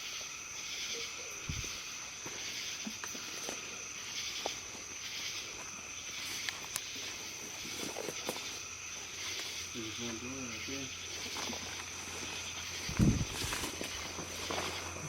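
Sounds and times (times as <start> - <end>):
crickets trilling: 0.0 - 15.0.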